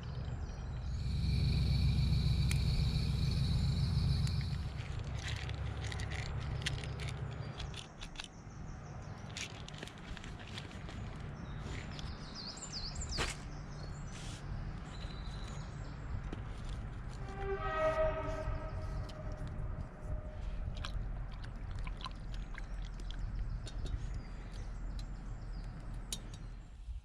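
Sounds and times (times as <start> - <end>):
steady low rumble: 0.0 - 9.2, 12.8 - 27.0
horn-like note: 17.2 - 20.4.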